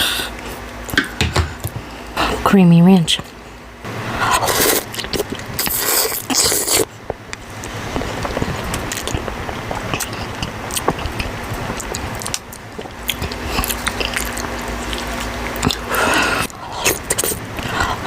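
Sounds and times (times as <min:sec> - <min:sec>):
wet chewing with mouth clicks: 0:04.4 - 0:18.0.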